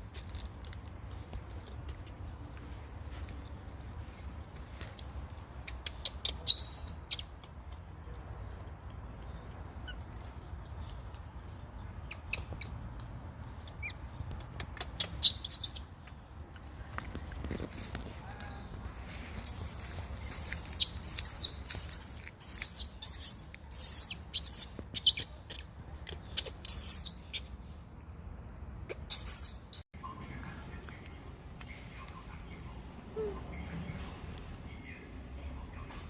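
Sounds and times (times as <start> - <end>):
birds chirping: 4.0 - 17.1, 18.6 - 27.8.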